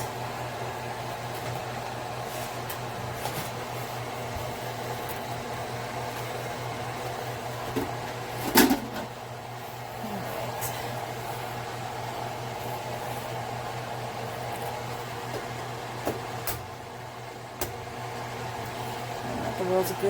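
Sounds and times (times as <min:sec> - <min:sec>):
cooling fan humming: 0:00.0 - 0:20.0.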